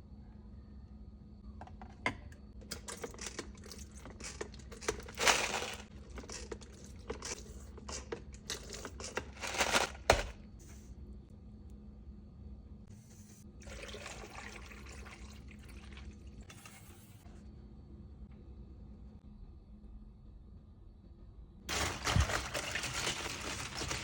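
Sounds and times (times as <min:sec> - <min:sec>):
packaging rustling and crinkling: 0:08.5 - 0:10.3, 0:21.7 - 0:24.0.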